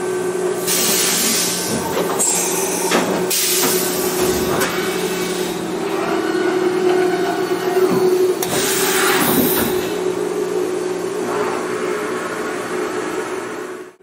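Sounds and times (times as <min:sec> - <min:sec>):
machine motor hum: 0:00.0 - 0:14.0.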